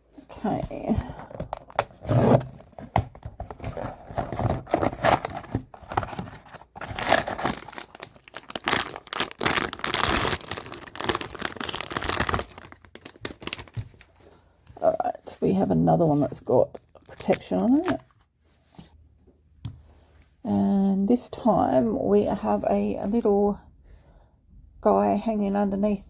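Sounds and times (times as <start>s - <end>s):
packaging being torn and crinkled: 3.7s - 14.1s, 16.8s - 18.0s.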